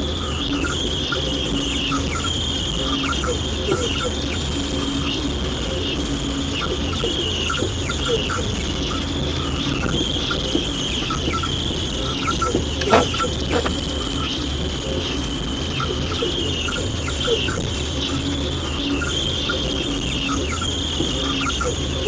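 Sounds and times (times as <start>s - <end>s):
radio hiss and hum: 12.0s - 15.4s
radio crackle: 12.6s - 14.1s
radio chirps and blips: 12.8s - 13.9s.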